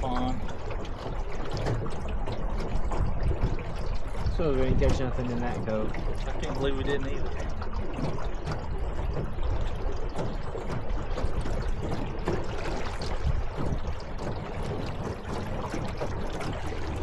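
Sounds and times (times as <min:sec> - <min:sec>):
water sloshing against boat hull: 0:00.0 - 0:17.0.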